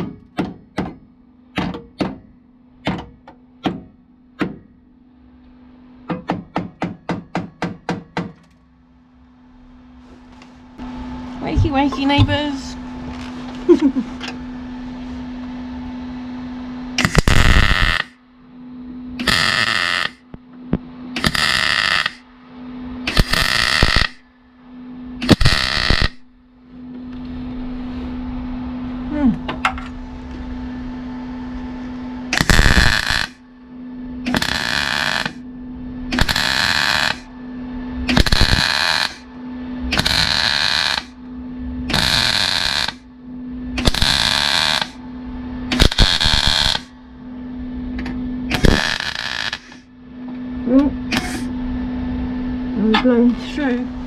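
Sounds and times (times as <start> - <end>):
steady low hum: 0.0 - 54.0
welder arc crackling: 17.0 - 18.2, 19.2 - 22.3, 23.0 - 24.3, 25.2 - 26.4, 32.3 - 33.4, 34.2 - 35.4, 36.1 - 37.3, 38.0 - 39.3, 39.9 - 41.2, 41.9 - 43.1, 43.7 - 45.0, 45.7 - 46.9, 48.5 - 49.9, 51.1 - 51.5.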